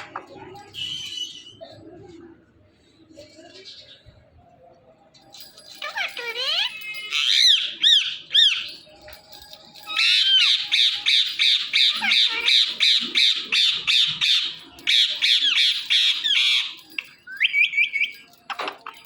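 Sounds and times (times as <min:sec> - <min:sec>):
parrot squawking: 0:10.0 - 0:16.7.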